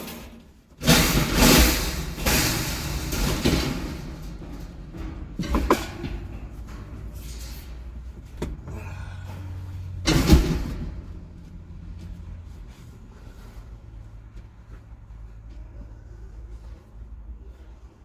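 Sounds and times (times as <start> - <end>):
knocks and clunks: 0.0 - 13.6
steady low rumble: 0.6 - 18.0.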